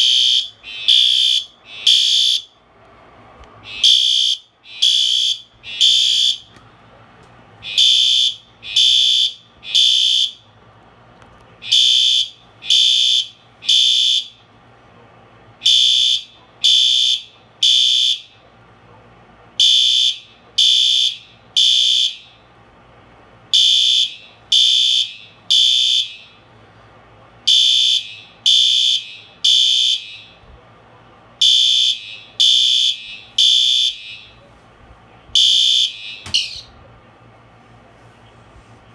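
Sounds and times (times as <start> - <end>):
fire alarm beeps: 0.0 - 2.6, 3.7 - 6.5, 7.6 - 10.4, 11.6 - 14.4, 15.6 - 18.4, 19.6 - 22.3, 23.5 - 26.4, 27.5 - 30.4, 31.4 - 34.4, 35.4 - 36.7.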